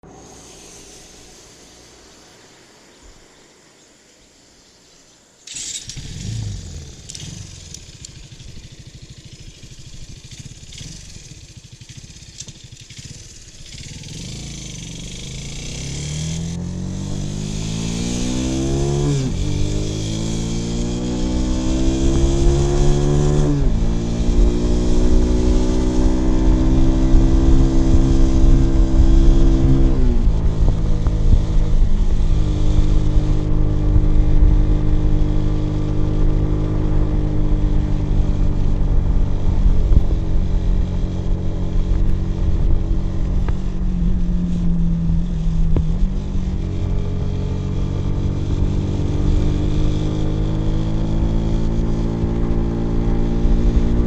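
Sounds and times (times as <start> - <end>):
motorcycle accelerating through gears: 5.5 - 54.0
motorcycle engine idling unevenly: 6.0 - 15.6.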